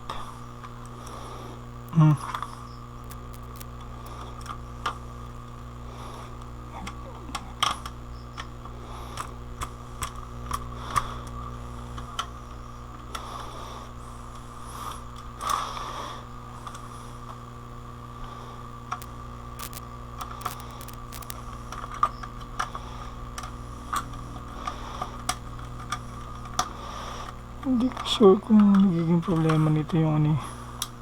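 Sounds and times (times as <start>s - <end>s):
low electrical hum: 0.0s - 31.0s
small parts clicking: 1.9s - 5.0s, 18.9s - 22.8s.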